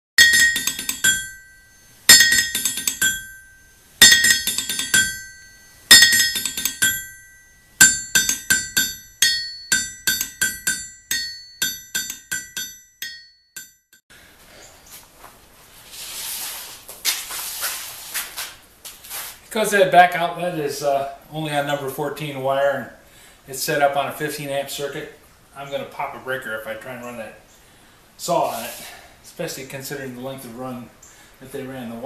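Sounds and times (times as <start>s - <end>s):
metal object ringing when struck: 0.2s - 13.9s.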